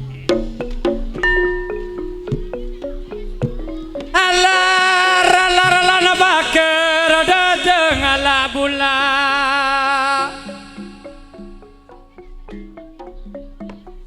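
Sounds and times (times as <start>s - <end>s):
tuned percussion: 0.0s - 14.0s
wavering sliding lead melody: 0.0s - 14.0s.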